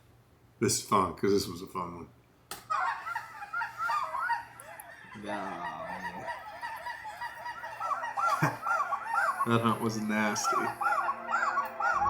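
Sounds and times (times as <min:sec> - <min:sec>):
flock of geese honking: 0:02.7 - 0:12.0.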